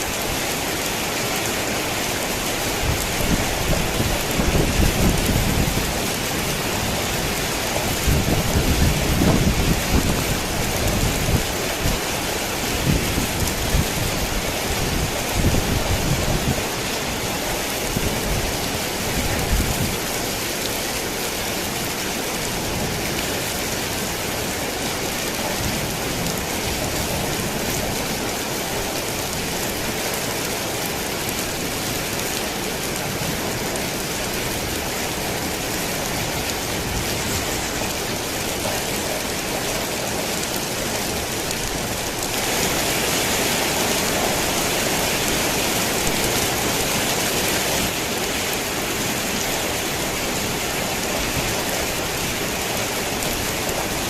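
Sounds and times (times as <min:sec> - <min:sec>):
rain on a tin roof: 0:00.0 - 0:54.0.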